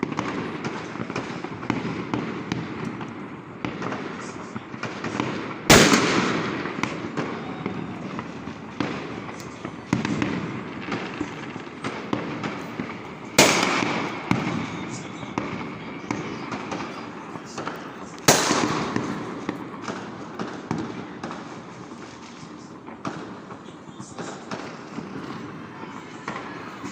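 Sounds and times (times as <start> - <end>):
firework pops and crackles: 0.0 - 26.9
fireworks booming: 0.0 - 26.9.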